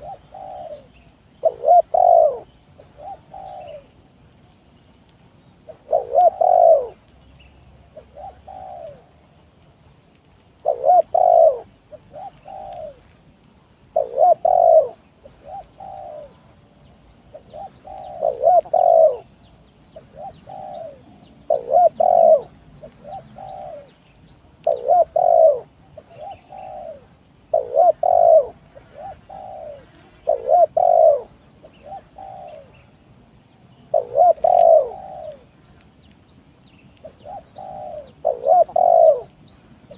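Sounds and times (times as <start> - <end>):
dove cooing: 0.0 - 4.0, 5.7 - 7.0, 7.9 - 9.1, 10.6 - 13.1, 13.9 - 16.5, 17.3 - 19.3, 20.0 - 24.0, 24.6 - 32.8, 33.9 - 35.6, 37.0 - 39.9.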